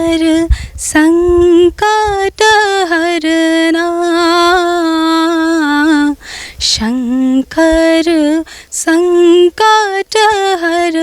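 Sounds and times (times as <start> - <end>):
woman singing unaccompanied: 0.0 - 11.0
woman breathing in: 0.5 - 0.8, 6.2 - 6.6, 8.4 - 8.7.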